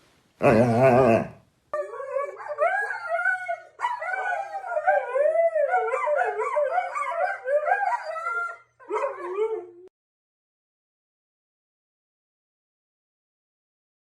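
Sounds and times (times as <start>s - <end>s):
dog howling and whining: 0.4s - 9.9s.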